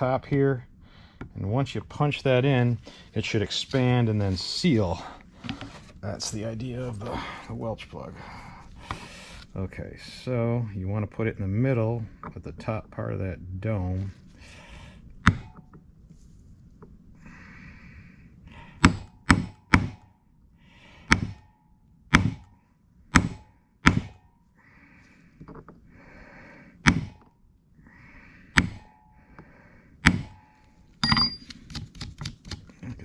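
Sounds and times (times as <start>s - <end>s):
hammer tapping metal punch: 18.8s - 20.1s, 21.1s - 21.5s, 22.1s - 24.2s, 28.6s - 29.0s, 30.0s - 31.6s.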